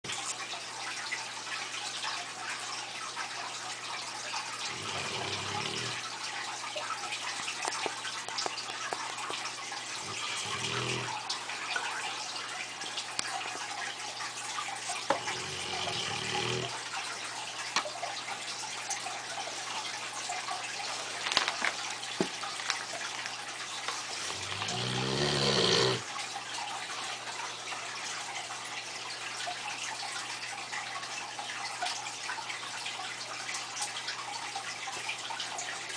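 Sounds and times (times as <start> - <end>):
dog snoring: 4.6 - 6.0, 9.9 - 11.2, 15.2 - 16.8, 24.2 - 26.0.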